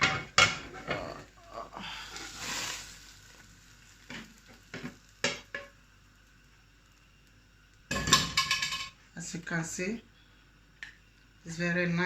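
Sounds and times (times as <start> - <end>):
frying sizzle: 0.0 - 10.0
plate knocking against frying pan: 7.9 - 8.9.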